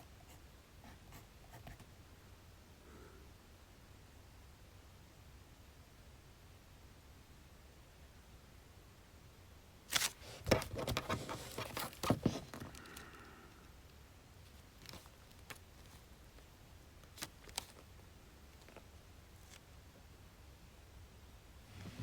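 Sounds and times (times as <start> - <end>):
paper rustling and scratching: 9.9 - 13.1, 14.8 - 16.1, 17.0 - 17.8.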